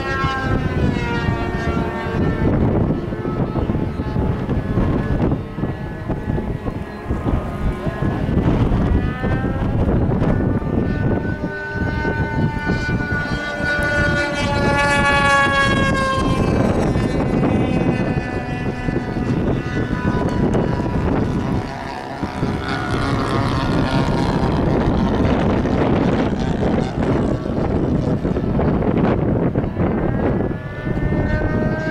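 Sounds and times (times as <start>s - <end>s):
model airplane engine whine: 0.0s - 31.9s
wind noise on microphone: 0.0s - 31.9s.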